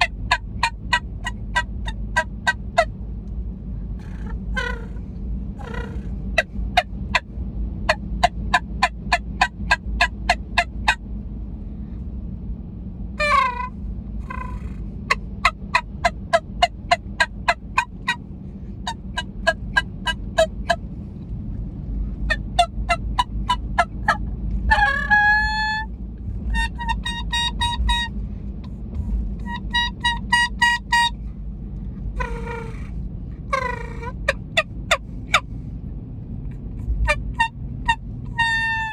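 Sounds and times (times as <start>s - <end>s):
turkey call clucks and yelps: 0.0s - 2.9s, 4.0s - 5.0s, 5.6s - 7.3s, 7.9s - 11.0s, 13.2s - 18.2s, 18.8s - 20.8s, 22.3s - 25.9s, 26.6s - 28.1s, 29.4s - 31.2s, 32.2s - 32.9s, 33.5s - 35.5s, 36.8s - 38.9s.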